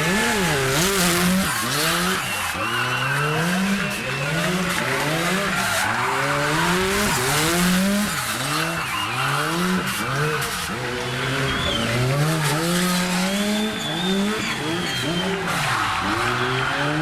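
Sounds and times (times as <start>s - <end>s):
rally car engine revving: 0.0s - 17.0s.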